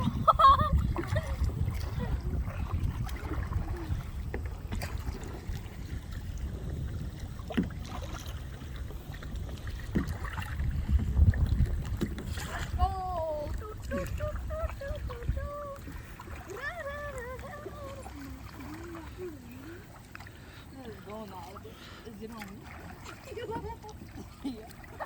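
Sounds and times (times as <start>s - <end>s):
wind rumbling on microphone: 0.0s - 19.5s.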